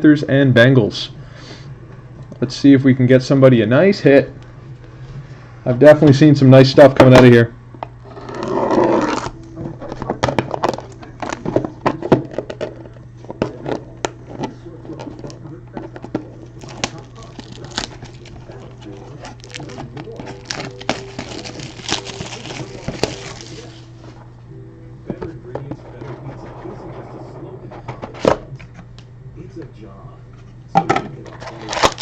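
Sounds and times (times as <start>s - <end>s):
steady low hum: 0.0s - 32.0s
plastic wrap crinkling and tearing: 16.6s - 24.1s, 31.4s - 32.0s.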